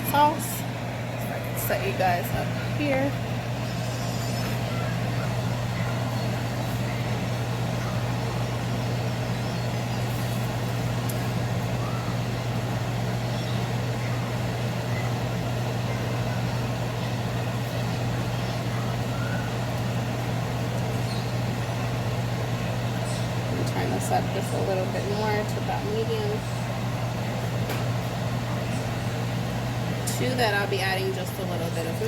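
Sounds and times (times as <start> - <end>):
appliance motor hum: 0.0 - 32.0.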